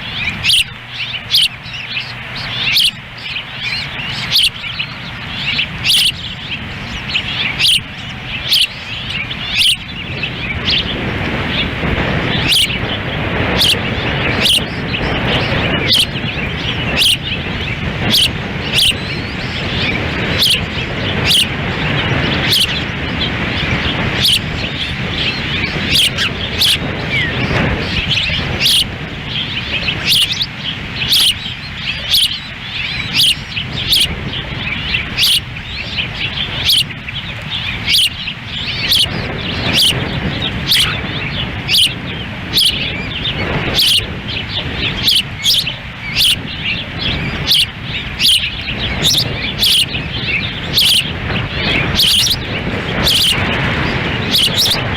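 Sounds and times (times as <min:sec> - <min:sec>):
osprey chirping calls: 0:00.0 - 0:54.9
wind rumbling on microphone: 0:00.0 - 0:54.9.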